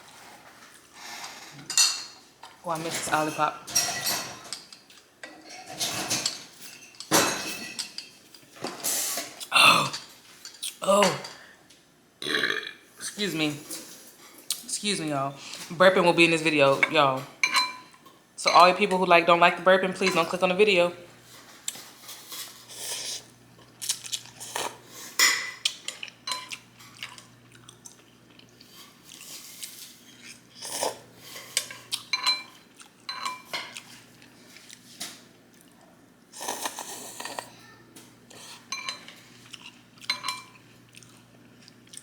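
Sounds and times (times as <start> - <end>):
utensils clinking against bowl: 1.2 - 11.4, 16.6 - 19.0, 19.9 - 20.9, 24.5 - 27.4, 30.1 - 34.0, 36.7 - 41.2.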